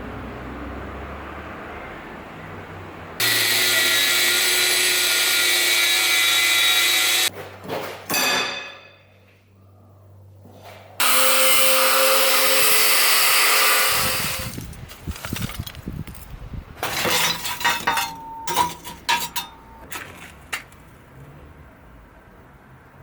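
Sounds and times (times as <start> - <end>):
power tool grinding steel: 3.2 - 7.3, 11.0 - 14.7, 16.9 - 19.9
metallic clinks and knocks: 15.2 - 20.8.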